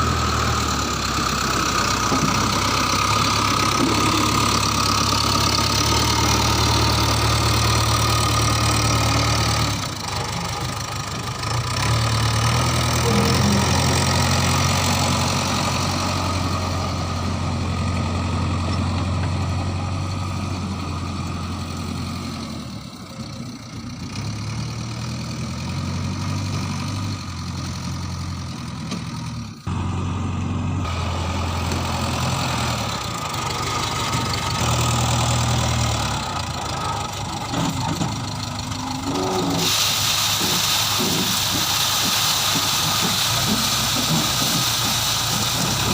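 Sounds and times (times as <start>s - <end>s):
heavy diesel engine running: 0.0s - 45.9s.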